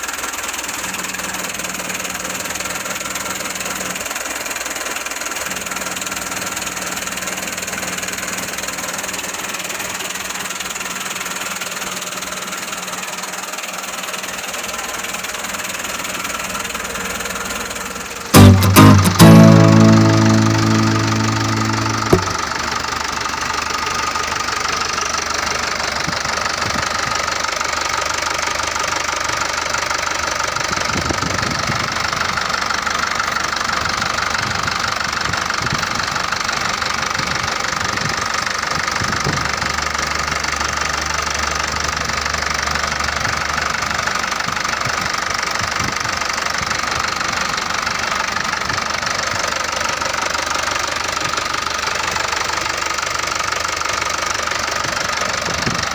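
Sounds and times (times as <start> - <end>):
diesel engine idling: 0.0 - 55.9.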